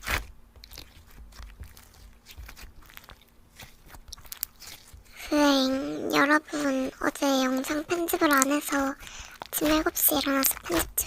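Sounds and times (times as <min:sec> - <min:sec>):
slime squished by hand: 0:00.0 - 0:05.1.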